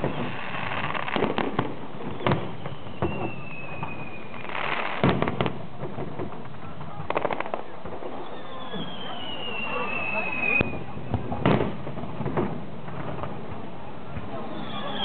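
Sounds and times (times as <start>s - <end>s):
fireworks bangs with crackling: 0.0s - 15.0s
thin falling whistle: 2.1s - 4.5s, 8.2s - 10.8s, 14.5s - 15.0s.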